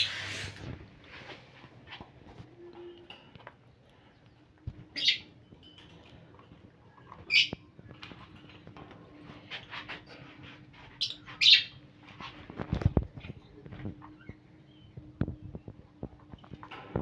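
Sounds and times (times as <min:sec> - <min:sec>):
soft bird chirps and chatter: 0:02.4 - 0:17.0
parrots squawking: 0:11.0 - 0:11.8.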